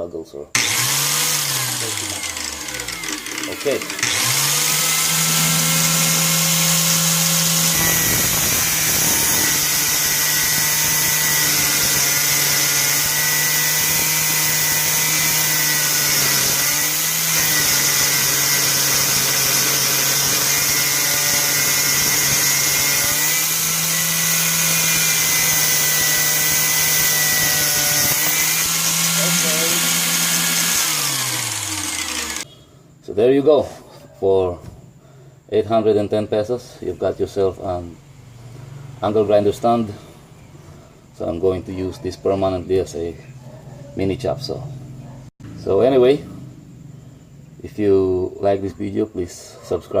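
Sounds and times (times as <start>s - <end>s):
angle grinder motor: 0.6s - 32.5s
grinder cutting steel rebar: 0.6s - 32.5s.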